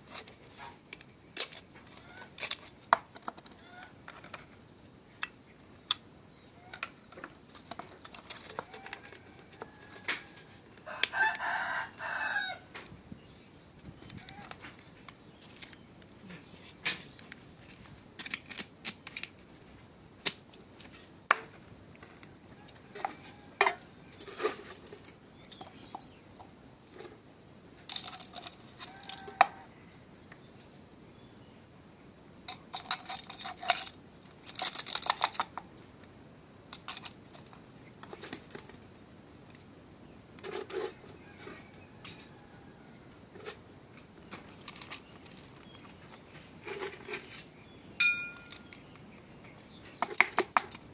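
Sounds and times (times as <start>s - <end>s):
chickens clucking and crowing: 3.2s - 4.5s, 6.5s - 13.0s, 22.1s - 25.3s, 27.9s - 30.2s, 40.5s - 48.7s.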